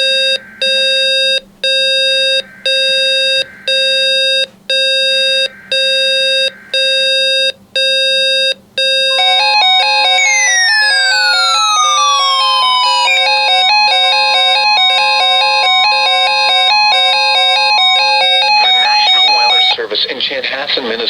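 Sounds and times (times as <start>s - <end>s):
harsh steady alarm beeps: 0.0s - 19.8s
warbling alarm with falling sweep: 9.1s - 14.2s.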